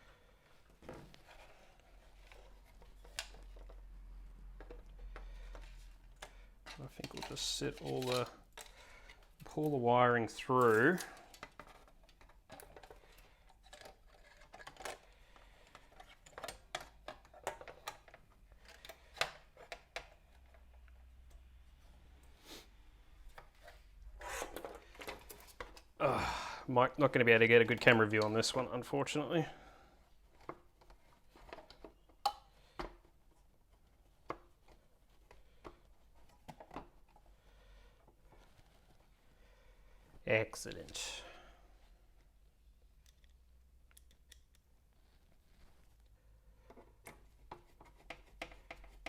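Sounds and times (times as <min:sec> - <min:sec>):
small clicks of handling parts: 0:10.6 - 0:21.5, 0:42.9 - 0:44.9.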